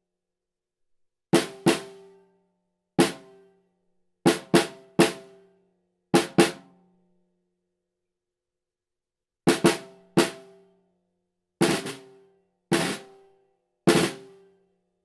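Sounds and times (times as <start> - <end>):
snare drum hits: 13.9 - 14.3.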